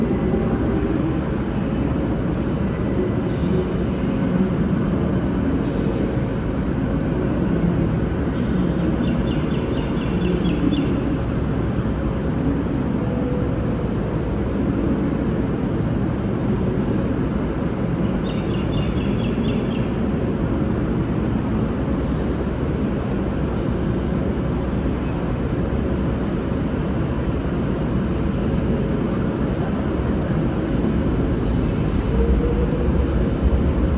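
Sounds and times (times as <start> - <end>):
faint constant hum: 0.0 - 33.9.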